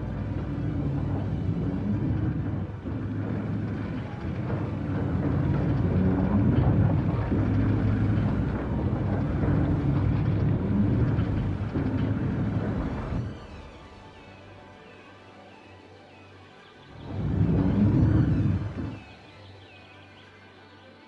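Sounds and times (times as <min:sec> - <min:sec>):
vehicle engine rumbling: 0:00.0 - 0:14.2, 0:17.0 - 0:19.1.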